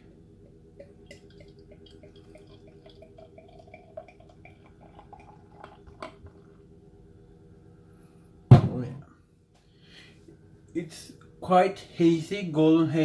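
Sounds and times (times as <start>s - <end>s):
beer trickling and fizzing: 0.6s - 6.9s.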